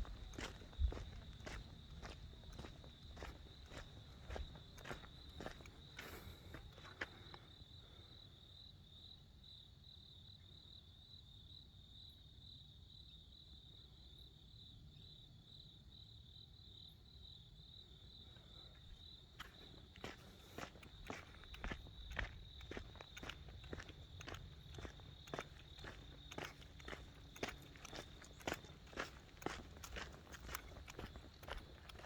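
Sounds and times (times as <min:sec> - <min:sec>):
footsteps: 0:00.0 - 0:06.4, 0:19.4 - 0:32.0.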